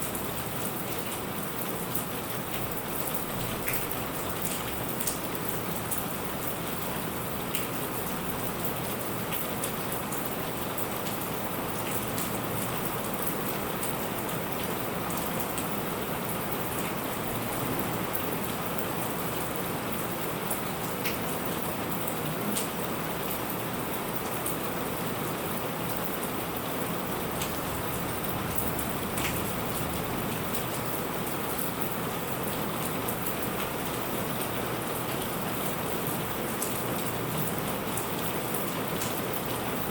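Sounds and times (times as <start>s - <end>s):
steady rain hiss: 0.0s - 39.9s
raindrop ticks: 21.0s - 21.3s.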